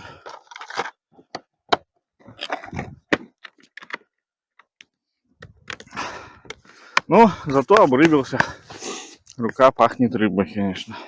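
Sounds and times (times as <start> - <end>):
handling rustling: 6.5 - 9.7.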